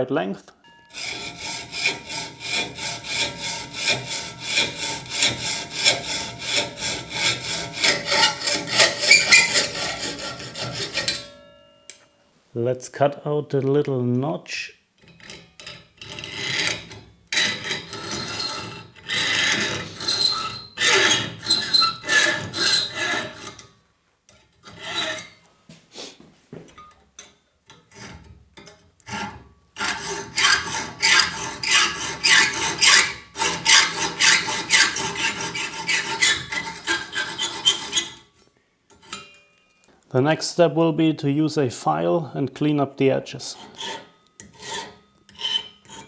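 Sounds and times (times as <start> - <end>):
hand tool rasping on aluminium: 0.9 - 11.9, 15.0 - 23.7, 24.6 - 25.4, 27.7 - 38.3, 43.5 - 46.0.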